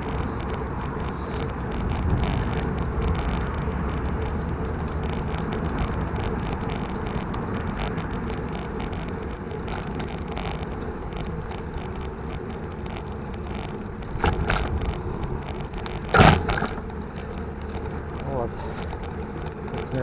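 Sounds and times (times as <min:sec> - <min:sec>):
bike tyres rumbling: 0:00.0 - 0:20.0
sharp bike rattles: 0:00.0 - 0:20.0
wind on microphone: 0:01.6 - 0:04.6.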